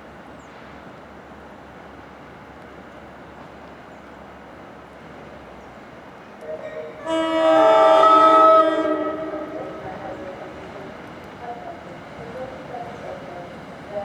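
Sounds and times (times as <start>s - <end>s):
locomotive air horn: 6.4s - 9.9s.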